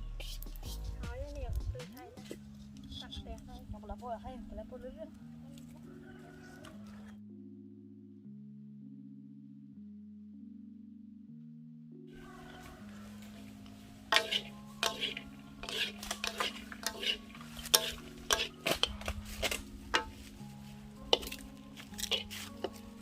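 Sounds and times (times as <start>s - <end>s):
background music with held notes: 0.0s - 23.0s
metal utensil stirring in metal pan: 12.2s - 23.0s.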